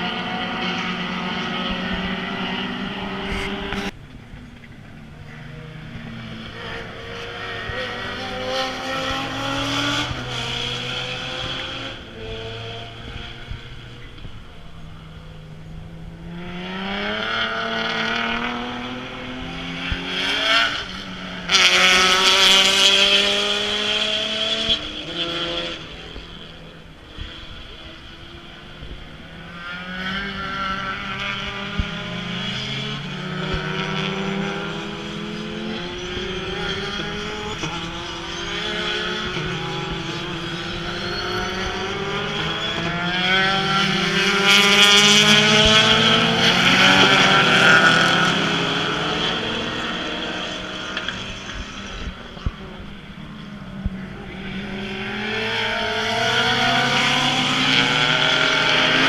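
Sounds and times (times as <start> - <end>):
race car engines accelerating: 0.0 - 59.0.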